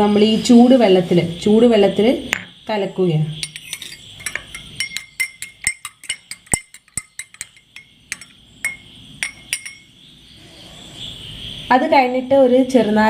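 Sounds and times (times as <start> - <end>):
spoon clinking against glass: 3.4 - 10.0.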